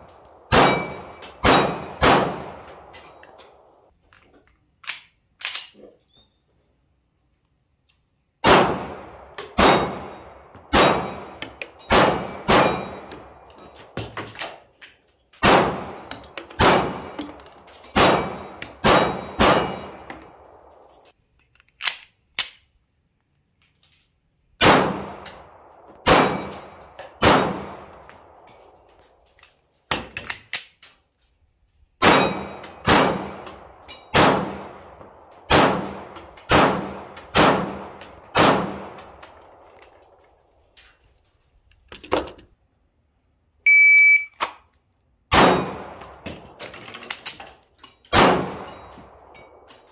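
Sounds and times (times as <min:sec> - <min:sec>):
pistol shots: 0:00.1 - 0:03.8, 0:08.4 - 0:14.6, 0:15.4 - 0:20.8, 0:24.6 - 0:28.7, 0:32.0 - 0:39.9, 0:45.3 - 0:46.4, 0:48.1 - 0:49.7
metallic clang ringing: 0:00.5 - 0:02.0
steady beep: 0:43.7 - 0:44.4.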